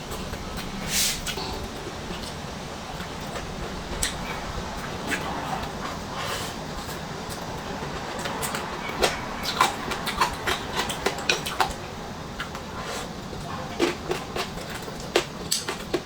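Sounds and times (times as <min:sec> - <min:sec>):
crisp chewing clicks: 0:13.4 - 0:16.0.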